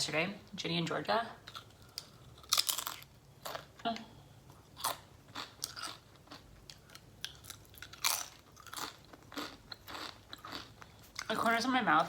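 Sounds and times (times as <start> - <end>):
crunchy chewing: 1.5 - 3.7, 4.6 - 11.6.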